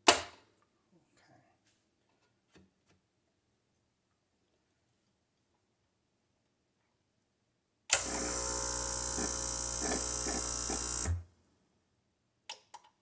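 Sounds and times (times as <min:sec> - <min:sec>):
water pump buzzing: 0:07.9 - 0:11.2.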